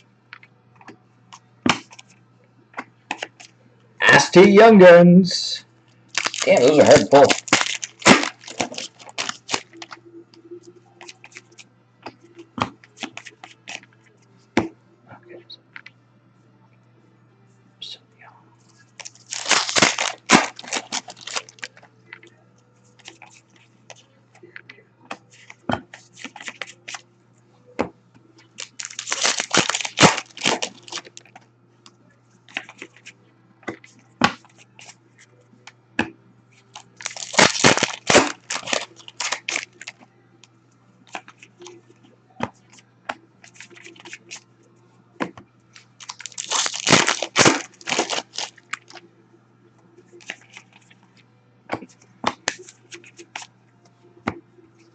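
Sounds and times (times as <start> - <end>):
cards clicking and tapping: 2.8 - 3.5
card wrappers tearing and crinkling: 6.1 - 10.0, 13.0 - 13.8, 19.0 - 21.8, 23.0 - 23.4, 25.3 - 27.0, 28.5 - 31.3, 32.5 - 33.1, 36.7 - 40.0, 43.4 - 44.4, 45.8 - 49.0, 50.2 - 50.9, 52.3 - 53.5.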